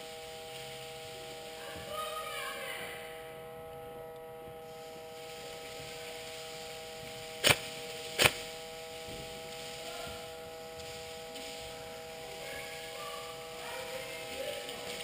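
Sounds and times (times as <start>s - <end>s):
steady electrical hum: 0.0s - 15.0s
airsoft gun shots: 7.4s - 8.5s.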